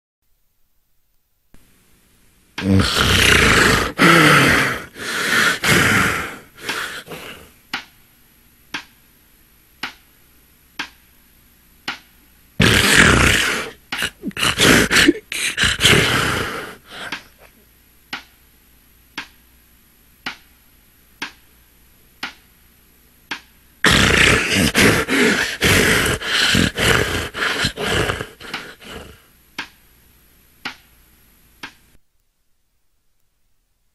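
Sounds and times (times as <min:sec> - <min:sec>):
person snoring: 0:02.6 - 0:07.5, 0:12.6 - 0:17.5, 0:23.8 - 0:29.3
sharp ticks: 0:10.8 - 0:11.0, 0:22.2 - 0:22.4.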